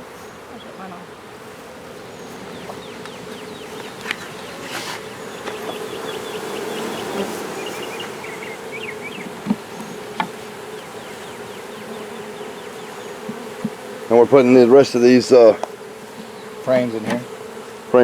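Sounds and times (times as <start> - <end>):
bees buzzing: 0.0 - 18.0.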